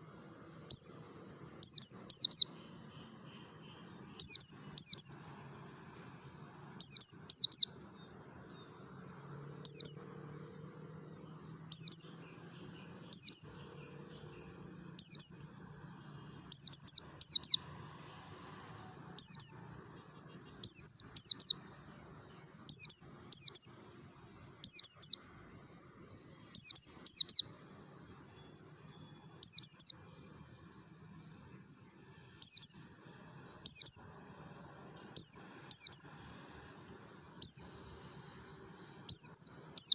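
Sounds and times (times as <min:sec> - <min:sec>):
bird giving high thin calls: 0:04.2 - 0:05.1, 0:11.7 - 0:12.1, 0:16.5 - 0:17.6, 0:20.6 - 0:21.6, 0:24.6 - 0:25.2, 0:29.4 - 0:30.0, 0:35.2 - 0:36.1, 0:39.1 - 0:39.9.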